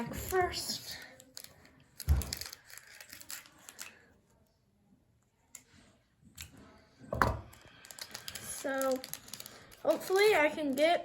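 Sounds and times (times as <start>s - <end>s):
foil wrapper crinkling: 1.2s - 4.0s, 7.6s - 11.0s.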